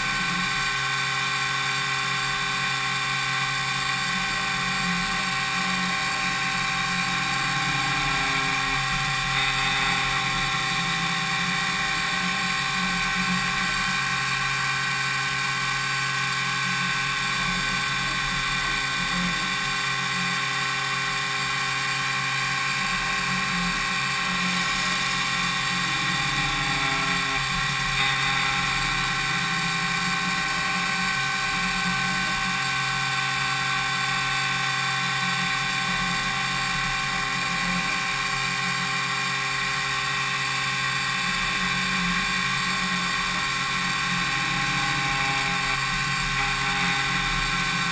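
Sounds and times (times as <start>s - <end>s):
milling machine spindle whine: 0.0s - 47.9s.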